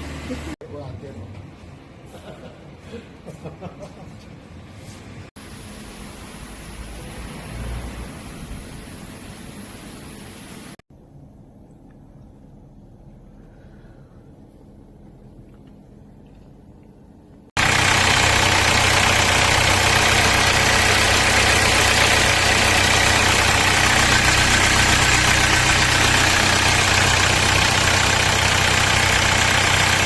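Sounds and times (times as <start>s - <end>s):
diesel engine idling: 17.6s - 30.0s.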